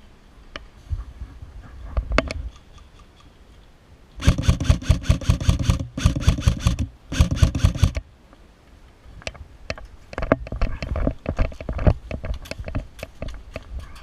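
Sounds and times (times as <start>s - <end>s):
airsoft rifle full-auto bursts: 4.2s - 8.0s.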